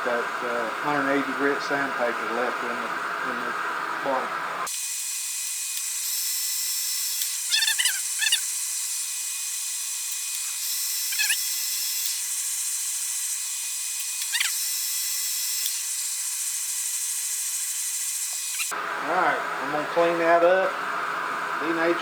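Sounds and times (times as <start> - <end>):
sandpaper sanding spinning wood: 7.3 - 14.6
short squeaky chirps: 7.4 - 8.5, 11.1 - 11.5, 14.2 - 14.6.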